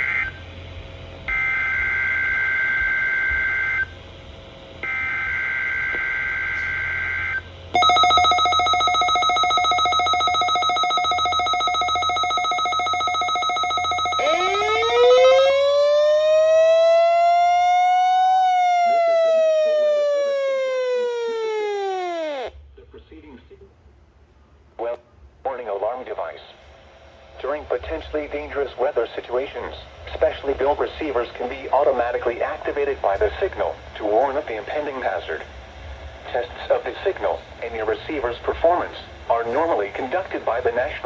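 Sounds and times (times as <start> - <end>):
screechy two-tone data bursts: 7.8 - 15.7
loud buzzy throbbing alarm tone: 7.8 - 22.5
siren-like sweeping tone: 7.8 - 22.5.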